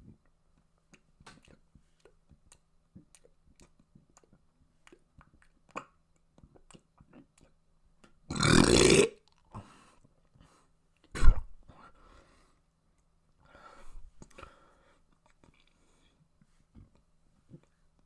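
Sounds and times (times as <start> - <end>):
loud burp: 8.3 - 9.2.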